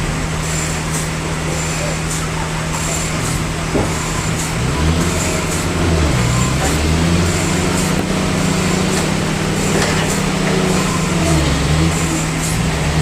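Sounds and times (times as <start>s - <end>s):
sawmill machinery drone: 0.0s - 13.0s.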